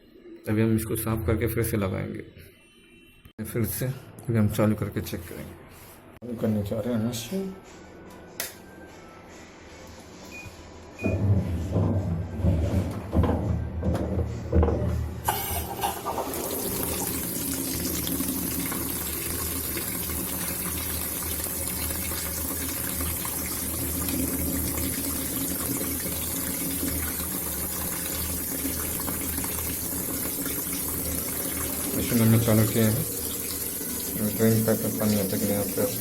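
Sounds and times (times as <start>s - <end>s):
washing machine low hum: 10.3s - 36.0s
washing machine knocks and clicks: 11.0s - 15.3s.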